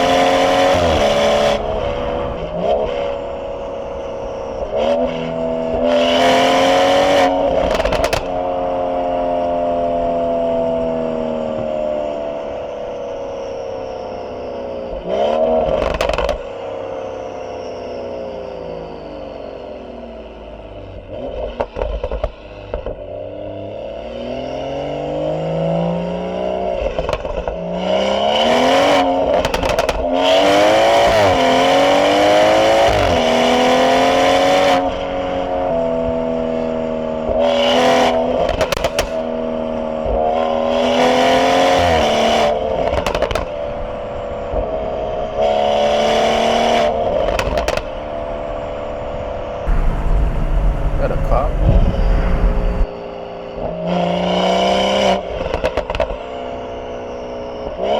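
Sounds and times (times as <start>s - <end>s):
car engine accelerating through gears: 0.0s - 9.8s, 21.0s - 43.6s, 49.6s - 56.1s
loud rushing noise: 49.7s - 52.9s.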